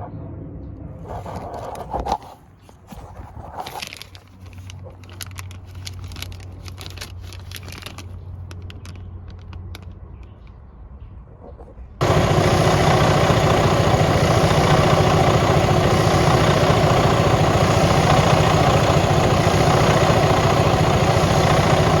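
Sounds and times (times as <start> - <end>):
diesel engine idling: 12.0 - 22.0.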